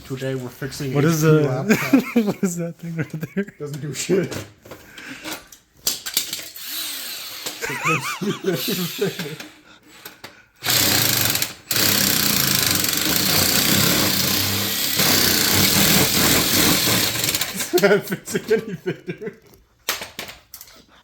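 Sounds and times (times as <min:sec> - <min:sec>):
power tool running: 0:06.4 - 0:09.6, 0:10.6 - 0:17.8.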